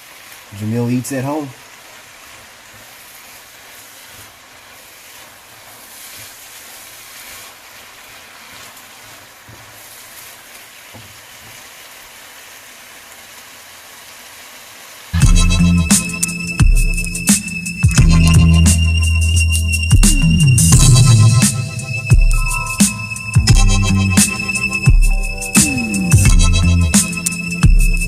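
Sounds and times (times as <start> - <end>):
vegetables sizzling in a pan: 0.0 - 28.0.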